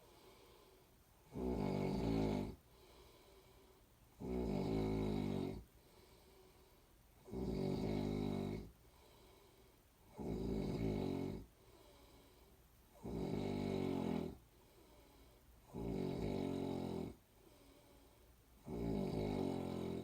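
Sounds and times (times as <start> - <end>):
quiet breath: 0.0 - 20.0
person snoring: 0.2 - 3.4, 4.2 - 5.7, 7.2 - 9.2, 10.1 - 11.5, 12.9 - 14.4, 15.6 - 17.8, 18.6 - 20.0.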